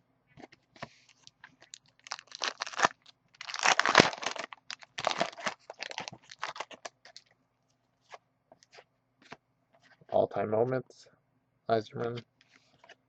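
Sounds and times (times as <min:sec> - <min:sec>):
foil wrapper crinkling and tearing: 0:01.1 - 0:07.2.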